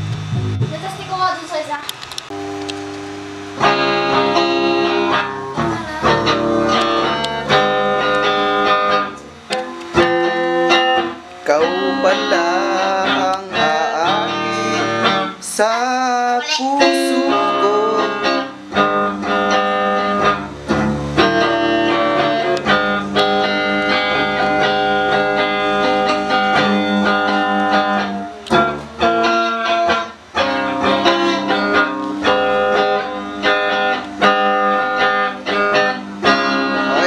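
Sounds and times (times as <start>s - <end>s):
plucked guitar music: 0.0s - 37.0s.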